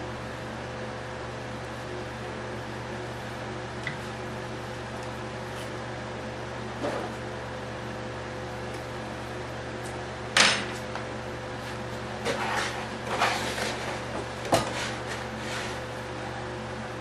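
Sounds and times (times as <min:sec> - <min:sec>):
steady electrical hum: 0:00.0 - 0:17.0
rustling and small scrapes: 0:04.8 - 0:05.8, 0:06.8 - 0:07.2, 0:11.6 - 0:16.0.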